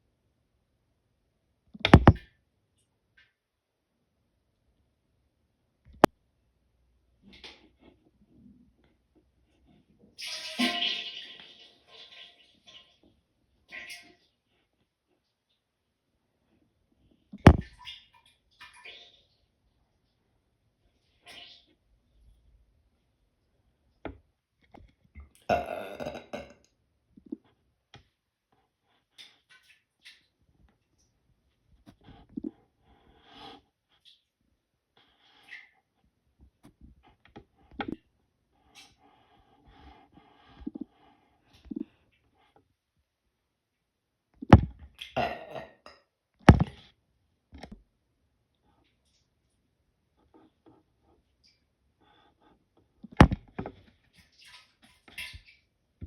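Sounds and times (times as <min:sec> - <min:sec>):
throat and mouth sounds: 0:25.4 - 0:26.6
person burping: 0:25.5 - 0:26.6, 0:45.2 - 0:45.9.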